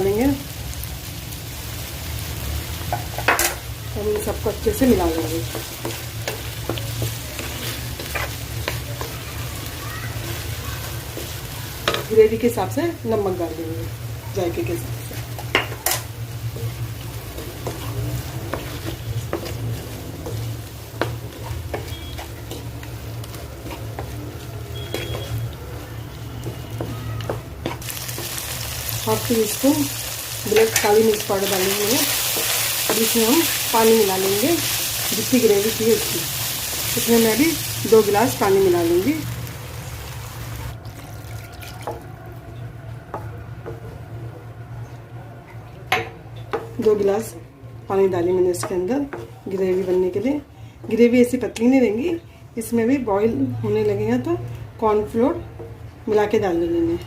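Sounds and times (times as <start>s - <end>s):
sauce sizzling in a pan: 0.0s - 40.8s
spoon scraping a pan: 17.4s - 25.6s.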